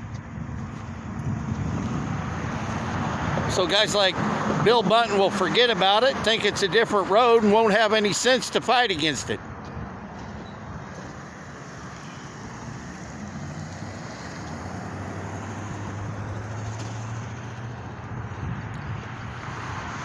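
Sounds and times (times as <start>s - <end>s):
wind on microphone: 0.0s - 4.7s, 18.1s - 19.9s
passing road traffic: 0.0s - 20.0s
vehicle engine hum: 0.0s - 20.0s.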